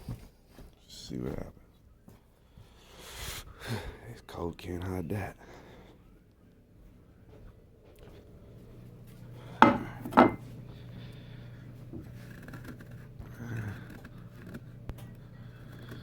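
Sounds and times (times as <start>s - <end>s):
steady low hum: 3.5s - 16.0s
faint handling noises: 5.8s - 16.0s.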